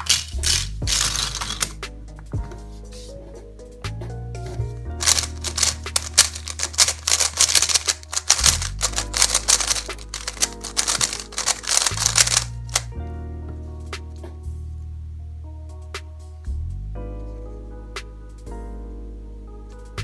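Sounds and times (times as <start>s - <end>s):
plastic puzzle cube clicking: 0.0s - 1.8s, 5.0s - 12.9s.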